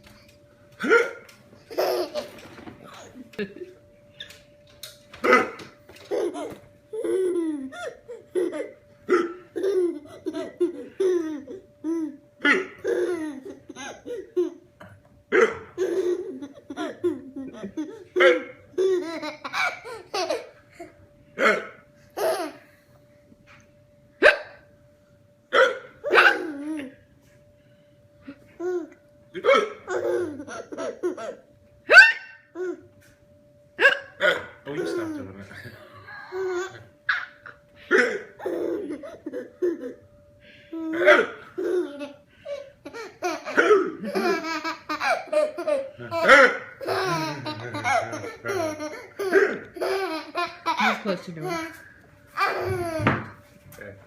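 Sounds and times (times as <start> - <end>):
man hiccuping: 0.8 - 1.3, 5.2 - 5.6, 9.1 - 9.4, 14.8 - 15.7, 21.4 - 21.8, 29.4 - 29.8, 33.8 - 34.6
small child laughing: 1.7 - 3.1, 6.0 - 14.6, 15.7 - 20.9, 28.6 - 31.4, 36.1 - 40.0, 40.8 - 51.8, 52.4 - 53.2.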